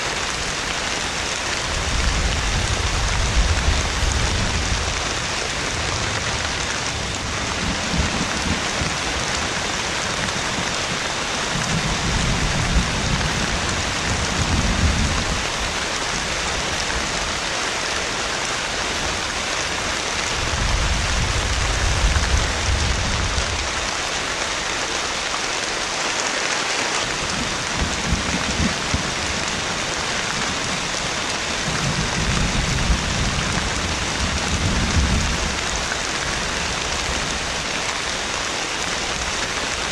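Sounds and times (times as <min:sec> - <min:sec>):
heavy rain pouring: 0:00.0 - 0:39.9
rolling thunder: 0:01.6 - 0:15.7, 0:27.1 - 0:37.6.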